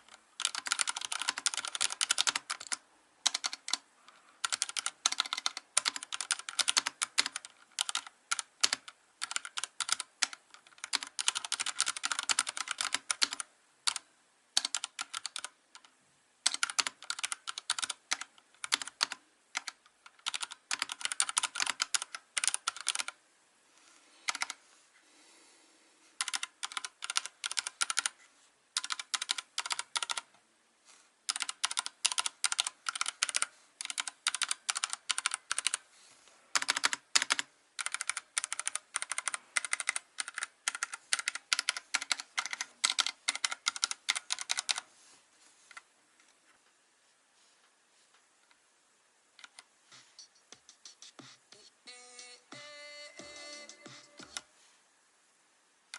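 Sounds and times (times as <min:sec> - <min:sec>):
typing on mechanical keyboard: 0:00.1 - 0:03.8, 0:04.4 - 0:23.2, 0:24.3 - 0:24.6, 0:26.2 - 0:28.2, 0:28.8 - 0:30.3, 0:31.3 - 0:35.8, 0:36.5 - 0:44.8, 0:49.4 - 0:51.2.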